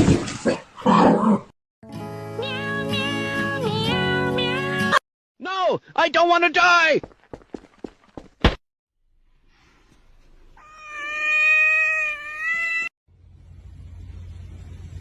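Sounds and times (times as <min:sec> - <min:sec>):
cat meowing: 0:10.6 - 0:12.9
low hum: 0:13.1 - 0:15.0.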